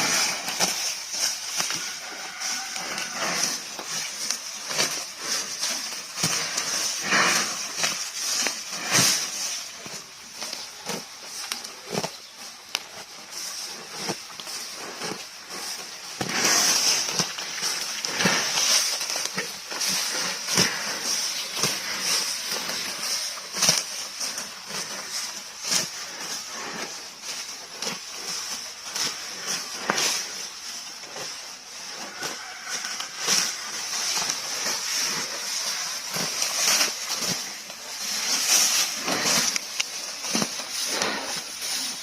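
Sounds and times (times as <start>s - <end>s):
grass torn off and chewed: 0.0s - 42.0s.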